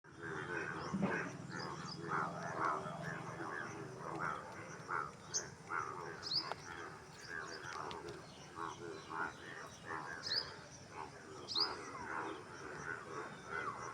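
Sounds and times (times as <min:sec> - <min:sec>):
frogs croaking: 0:00.1 - 0:13.9
low steady drone: 0:00.2 - 0:05.5.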